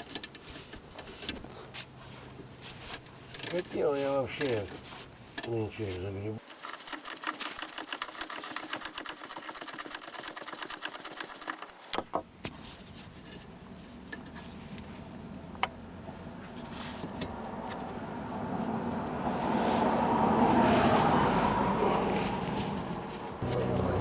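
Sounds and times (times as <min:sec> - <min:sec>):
low steady rumble: 0:12.3 - 0:24.0.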